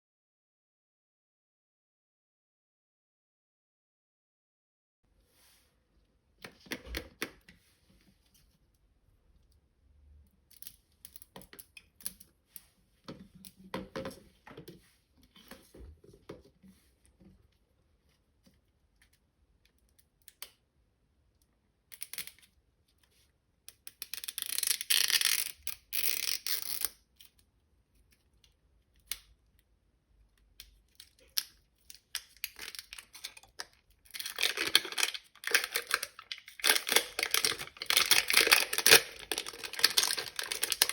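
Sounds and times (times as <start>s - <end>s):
packaging crinkling and tearing: 31.0s - 40.9s
toy packaging taps and rustles: 31.2s - 40.9s.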